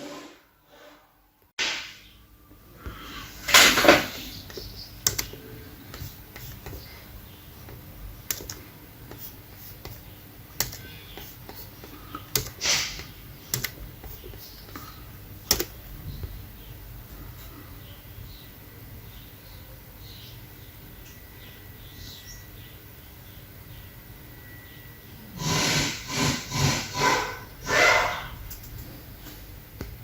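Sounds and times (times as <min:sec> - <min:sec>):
typing on computer keyboard: 0:04.5 - 0:06.9, 0:08.2 - 0:10.0, 0:10.6 - 0:14.9, 0:15.5 - 0:15.8.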